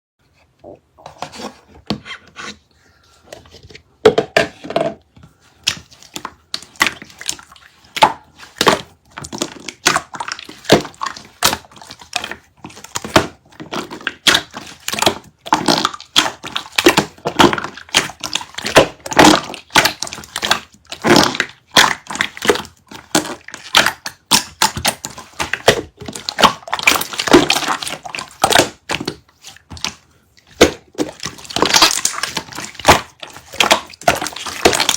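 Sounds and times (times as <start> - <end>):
slime squeezed with sticky pops: 5.6 - 30.0, 30.6 - 34.9.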